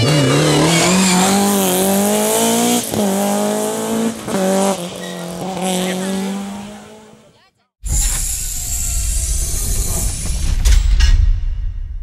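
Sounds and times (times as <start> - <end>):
rally car engine at high revs: 0.0 - 7.4.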